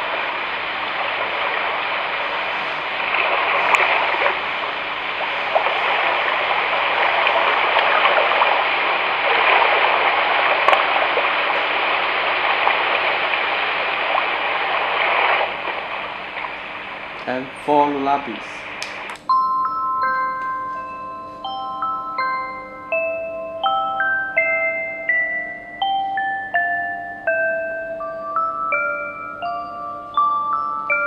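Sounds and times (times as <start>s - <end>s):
ocean wave sound from speaker: 0.0s - 19.2s.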